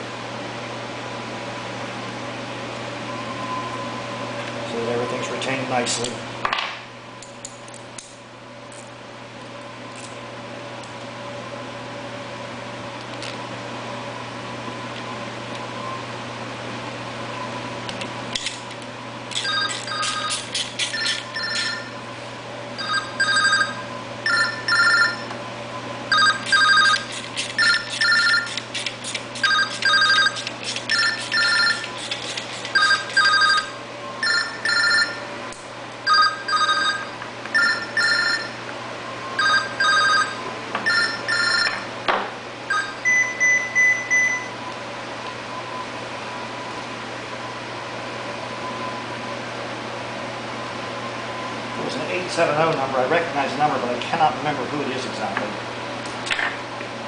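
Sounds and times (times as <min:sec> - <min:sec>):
telephone ringing: 0:19.4 - 0:20.4, 0:21.0 - 0:22.0, 0:22.8 - 0:25.3, 0:26.1 - 0:28.6, 0:29.4 - 0:32.0, 0:32.7 - 0:35.3, 0:36.0 - 0:38.6, 0:39.4 - 0:41.9, 0:42.7 - 0:44.5.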